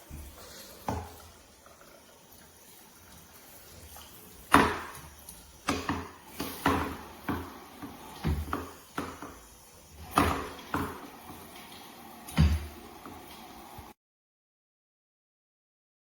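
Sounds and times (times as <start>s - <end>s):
shower fittings clacking and knocking: 4.0s - 13.5s.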